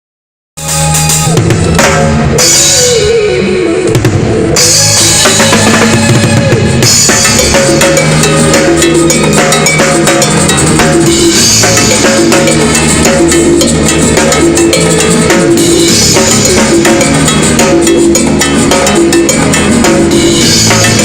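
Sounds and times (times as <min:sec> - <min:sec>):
bass notes: 0:00.6 - 0:21.0
cumbia music: 0:00.6 - 0:21.0
sliding keyboard notes: 0:04.6 - 0:21.0.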